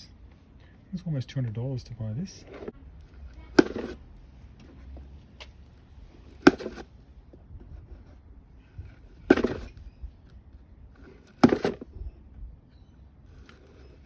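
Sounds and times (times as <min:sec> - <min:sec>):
cardboard box tearing: 0:03.6 - 0:04.0, 0:06.3 - 0:06.9, 0:09.3 - 0:09.8, 0:11.2 - 0:11.9.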